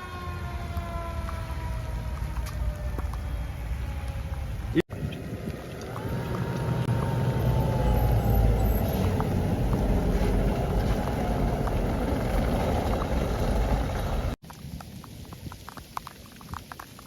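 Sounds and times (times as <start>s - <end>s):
low rumble: 1.3s - 14.4s
car wheels spinning on ice: 5.8s - 14.4s.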